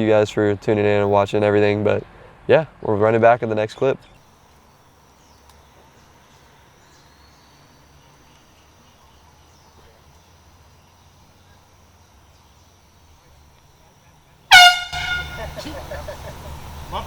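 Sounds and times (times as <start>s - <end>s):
faint hiss: 4.1s - 17.0s.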